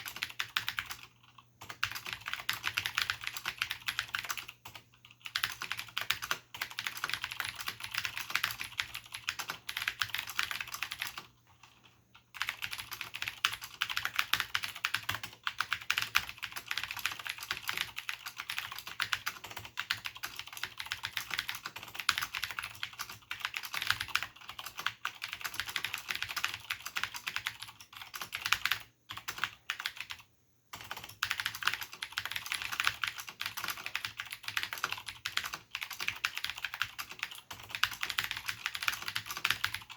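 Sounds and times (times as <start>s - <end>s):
fast typing on clicky keyboard: 0.0s - 39.9s.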